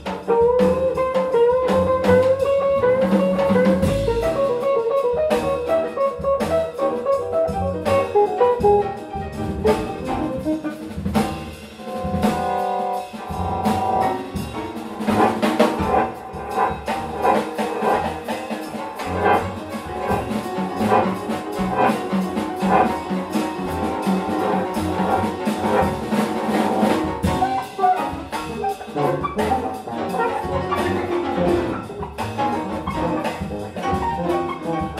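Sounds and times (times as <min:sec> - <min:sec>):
drum kit and bass: 0:00.0 - 0:34.9
horn section chord: 0:19.0 - 0:31.7.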